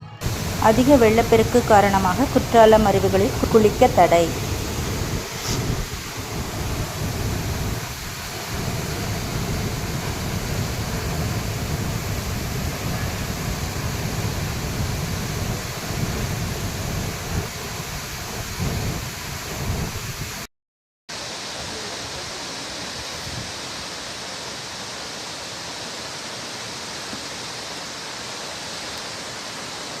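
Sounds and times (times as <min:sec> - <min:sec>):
waterfall rushing: 0:00.2 - 0:20.4, 0:21.1 - 0:30.0.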